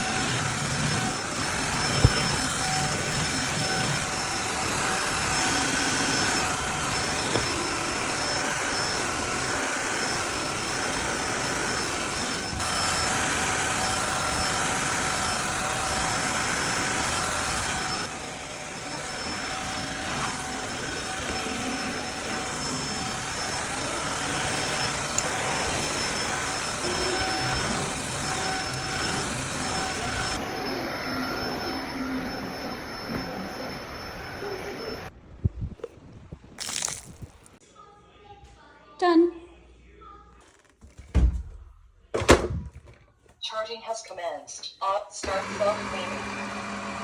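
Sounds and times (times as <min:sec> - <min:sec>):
vacuum mop motor whine: 0:00.0 - 0:35.1, 0:45.2 - 0:47.0.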